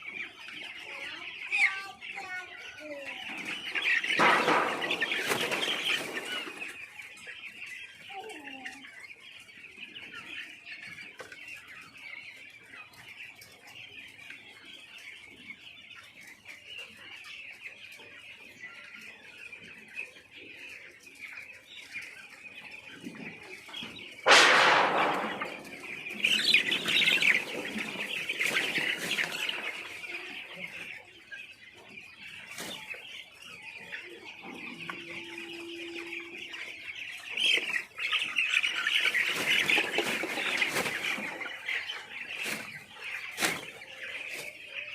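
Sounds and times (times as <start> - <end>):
chicks peeping: 0.0 - 44.9
sudden loud burst: 24.3 - 25.5.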